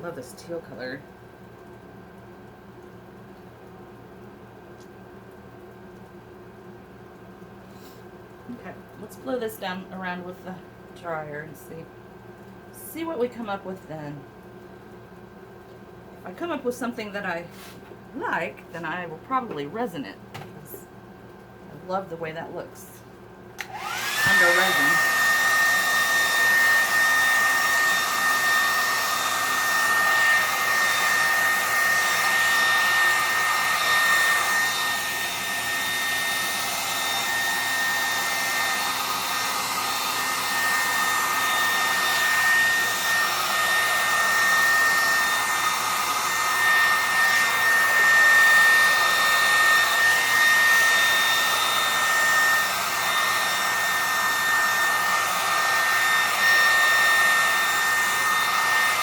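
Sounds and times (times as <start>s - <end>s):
hair dryer blowing: 23.6s - 59.0s.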